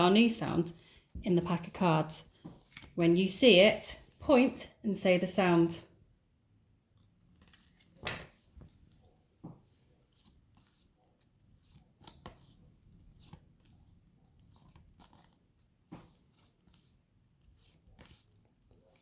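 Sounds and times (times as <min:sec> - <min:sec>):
flashcards clicking and rustling: 0:07.0 - 0:09.0, 0:11.6 - 0:19.0.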